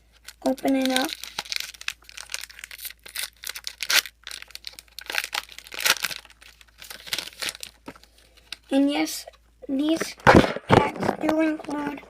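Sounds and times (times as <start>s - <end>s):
foil wrapper tearing and crinkling: 0.0s - 8.7s.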